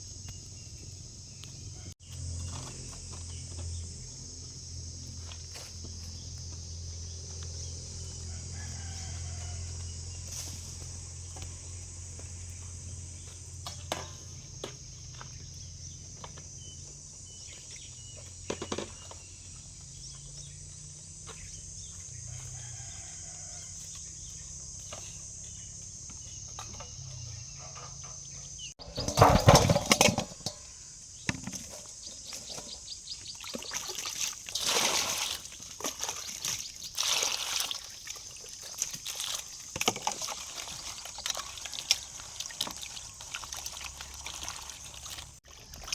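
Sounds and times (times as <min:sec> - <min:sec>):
high-pitched outdoor hiss: 0:00.0 - 0:40.2
clattering: 0:27.6 - 0:30.6
water splashing: 0:33.3 - 0:45.9.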